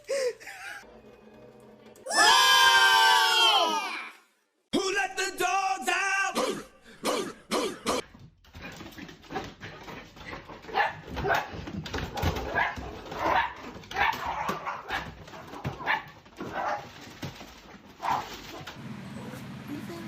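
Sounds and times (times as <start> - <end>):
dog barking: 10.6 - 11.6, 12.3 - 17.0, 18.0 - 18.7.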